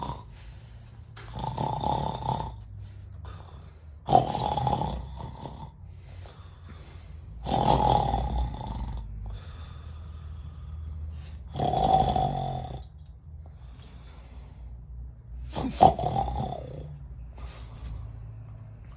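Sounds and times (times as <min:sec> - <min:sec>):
person snoring: 0:00.0 - 0:00.6, 0:01.2 - 0:06.8, 0:07.4 - 0:12.9, 0:15.4 - 0:17.0.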